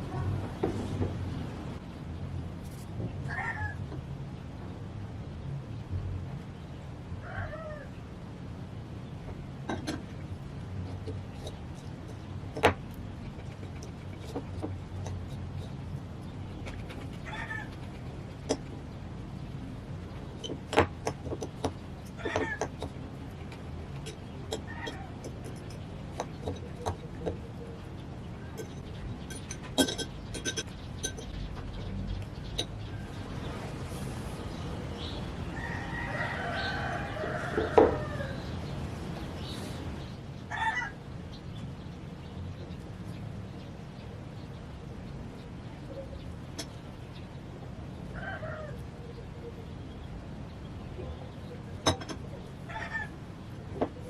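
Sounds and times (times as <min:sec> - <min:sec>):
rooster crowing: 0:35.4 - 0:38.7, 0:40.5 - 0:41.0, 0:48.1 - 0:48.8, 0:52.7 - 0:53.2.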